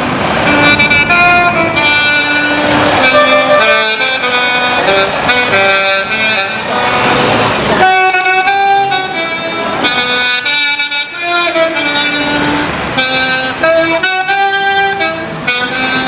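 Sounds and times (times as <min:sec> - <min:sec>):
noisy rushing: 0:00.0 - 0:10.4
horn blasts playing a tune: 0:00.0 - 0:16.0.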